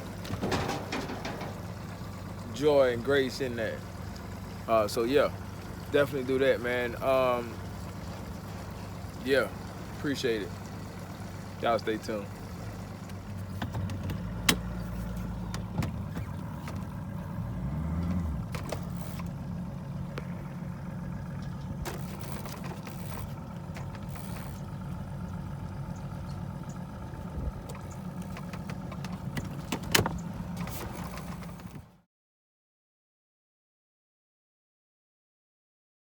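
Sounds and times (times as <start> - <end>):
engine idling and revving: 0.0 - 32.0
clicks and knocks: 0.2 - 2.2.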